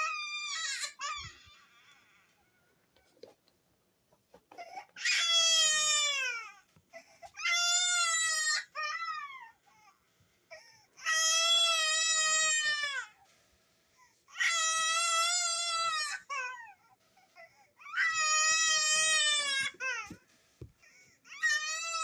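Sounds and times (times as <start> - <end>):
cartoon baby crying: 0.0 - 2.3, 4.7 - 6.6, 7.3 - 9.6, 14.3 - 17.0, 17.8 - 20.2, 21.3 - 22.0.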